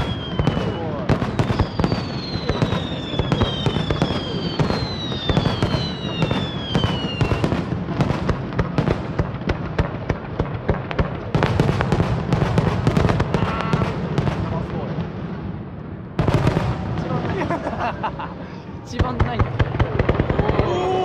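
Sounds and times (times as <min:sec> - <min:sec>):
fireworks whistles falling in pitch: 0:00.0 - 0:07.6
fireworks cracking and popping: 0:00.0 - 0:15.0, 0:16.1 - 0:18.2, 0:18.8 - 0:21.0.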